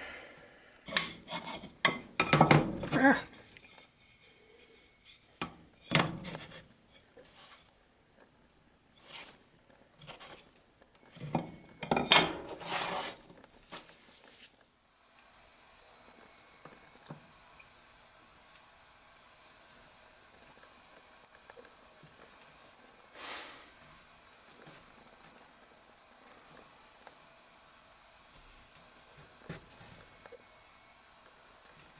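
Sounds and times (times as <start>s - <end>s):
hands scraping wood pieces: 12.3s - 14.5s.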